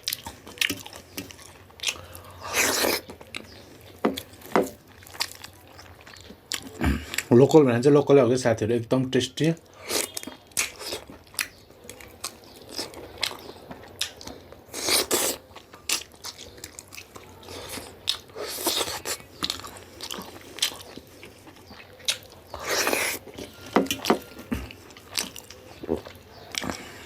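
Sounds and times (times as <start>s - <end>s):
chewing with wet mouth clicks: 0.0s - 7.3s, 9.6s - 27.0s
food crunching: 0.0s - 7.4s, 9.5s - 27.0s.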